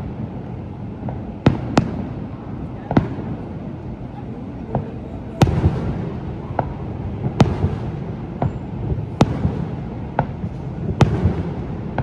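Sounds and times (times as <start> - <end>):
faint fireworks pops: 0.0 - 12.0
fireworks bangs: 0.0 - 12.0
steady low rumble: 0.0 - 12.0.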